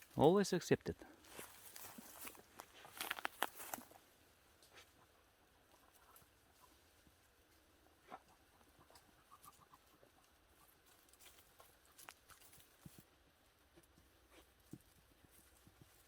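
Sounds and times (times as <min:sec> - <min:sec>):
faint rustles on forest floor: 0:00.0 - 0:16.0
small sharp ticks: 0:01.8 - 0:04.0.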